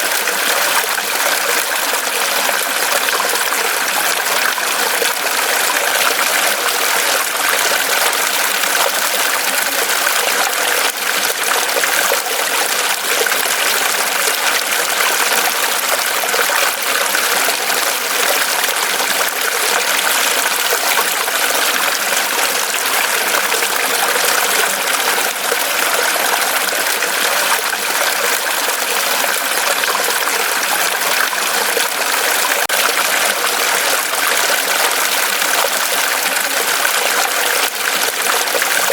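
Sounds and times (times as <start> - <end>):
stream running over rocks: 0.0 - 38.9.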